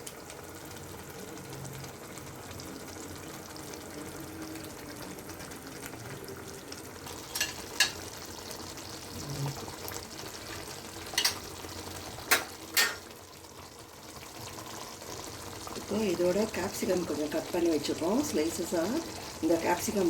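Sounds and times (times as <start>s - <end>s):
gravy sizzling and bubbling: 0.0s - 20.0s
spoon clinking against pan: 7.3s - 8.0s, 11.2s - 11.4s, 12.3s - 13.0s.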